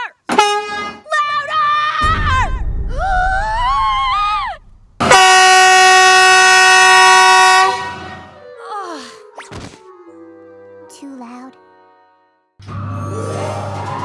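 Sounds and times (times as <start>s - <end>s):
train air horn blast: 5.0s - 8.4s.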